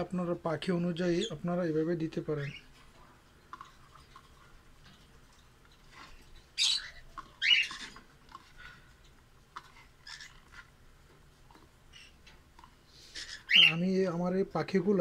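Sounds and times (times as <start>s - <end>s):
parrots chirping: 2.3s - 2.8s, 5.8s - 10.7s, 11.4s - 14.2s
loud harsh parrot squawks: 6.6s - 8.0s, 13.0s - 13.8s.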